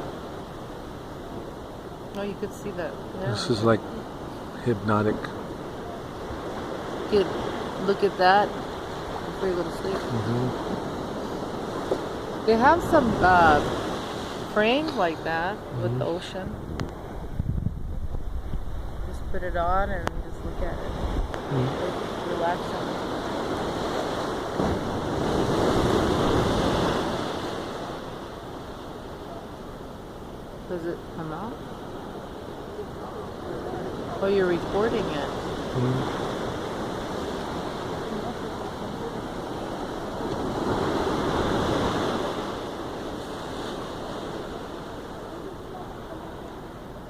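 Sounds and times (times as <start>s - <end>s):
wind buffeting microphone: 0.0s - 30.6s
ocean wave breaking: 0.0s - 47.0s.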